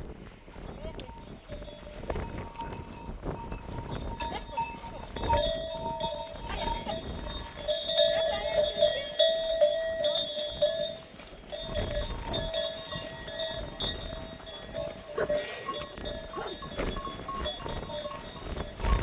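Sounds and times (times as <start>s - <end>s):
livestock bells clinking: 0.2s - 19.0s.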